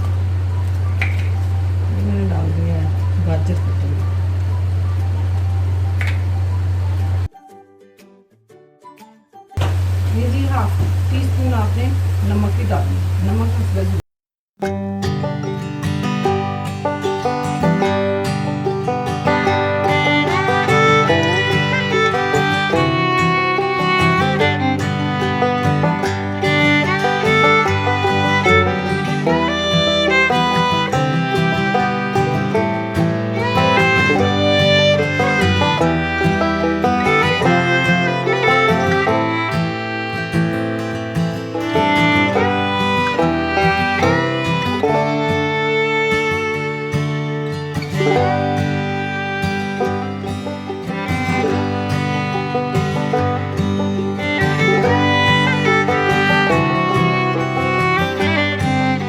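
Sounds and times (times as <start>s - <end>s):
plucked guitar: 14.6s - 59.0s
upbeat fiddle tune: 14.6s - 59.0s.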